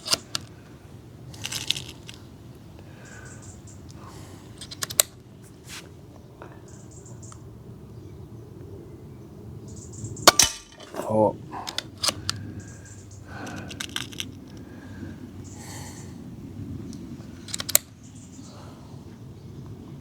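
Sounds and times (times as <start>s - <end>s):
air pistol lever clicks: 4.6s - 5.2s, 11.6s - 12.5s, 16.9s - 18.0s
air pistol shot: 10.3s - 10.8s.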